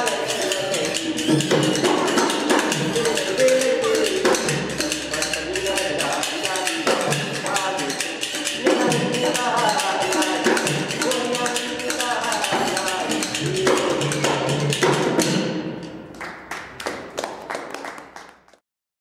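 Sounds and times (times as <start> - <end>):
folk melody sung: 0.0 - 15.4
rapid percussion beats: 0.0 - 18.5.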